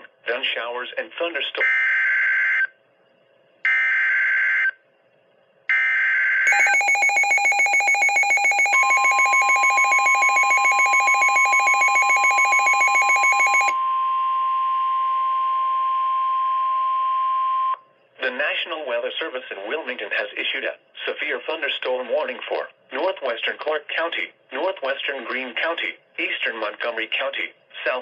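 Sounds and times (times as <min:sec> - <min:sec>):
steady warning alarm tone: 0:05.7 - 0:13.8
rapid electronic beeping: 0:06.5 - 0:13.8.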